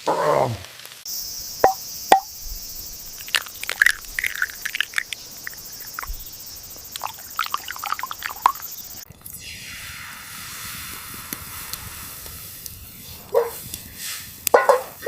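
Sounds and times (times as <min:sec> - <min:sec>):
insects droning: 0:01.1 - 0:15.0
bird chirps: 0:01.2 - 0:09.0.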